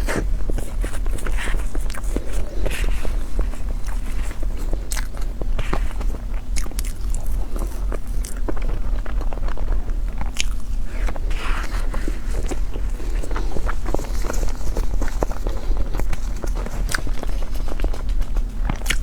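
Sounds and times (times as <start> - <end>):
person biting and chewing food: 0.0 - 19.0.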